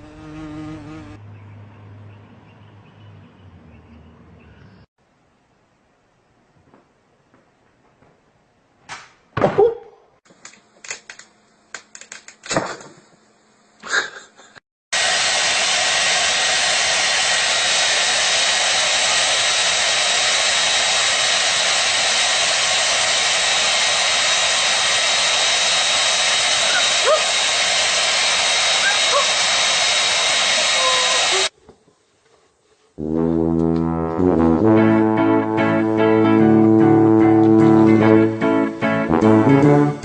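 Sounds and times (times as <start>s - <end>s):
electric fan running: 15.0s - 31.5s.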